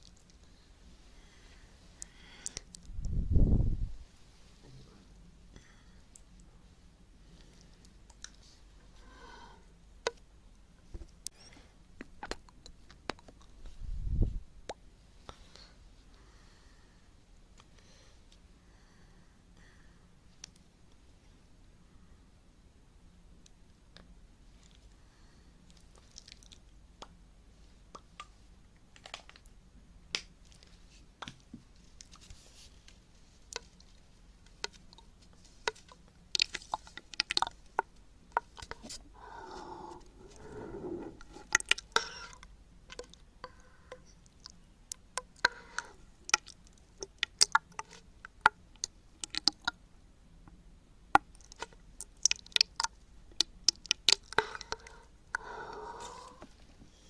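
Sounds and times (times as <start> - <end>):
wet mouth clicks and smacks: 35.7 - 38.9, 41.2 - 43.6, 44.2 - 49.8, 51.2 - 55.5
breathy murmured voice: 39.1 - 41.5, 54.7 - 56.5.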